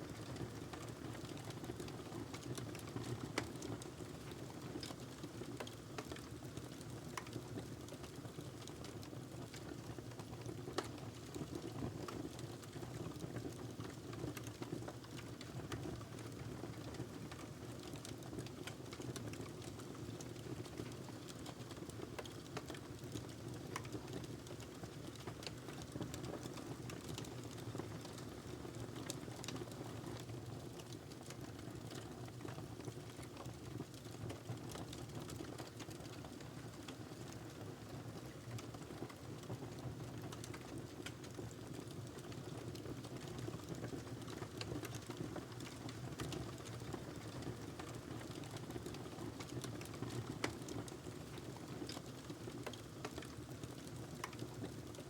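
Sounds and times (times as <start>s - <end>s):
wood fire crackling: 20.3s - 37.3s, 40.2s - 55.0s.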